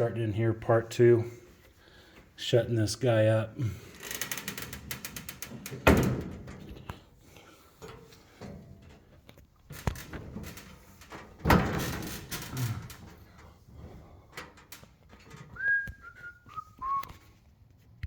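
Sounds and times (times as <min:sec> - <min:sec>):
rattle of small clicks: 0:03.9 - 0:05.9.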